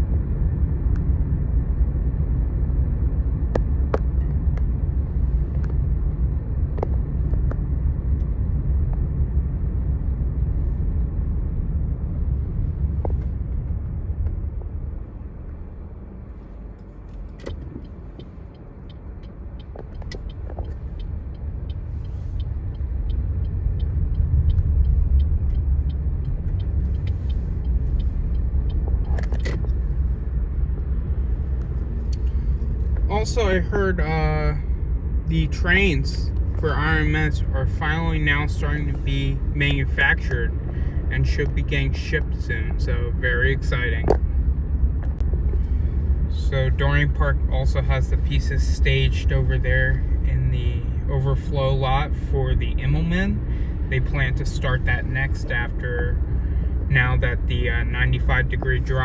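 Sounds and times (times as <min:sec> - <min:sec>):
low vehicle rumble: 0:00.0 - 0:59.0
faint ticks: 0:17.1 - 0:29.8.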